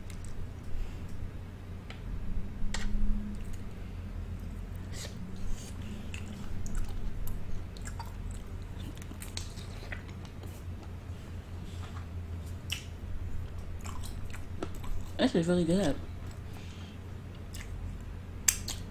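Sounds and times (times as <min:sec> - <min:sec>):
person chewing food: 0:04.2 - 0:15.2, 0:16.0 - 0:18.9.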